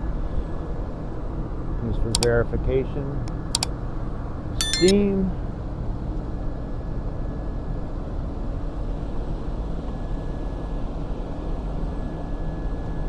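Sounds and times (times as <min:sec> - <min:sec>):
air conditioning unit droning: 0:00.0 - 0:13.0
faint high whine: 0:04.6 - 0:05.2.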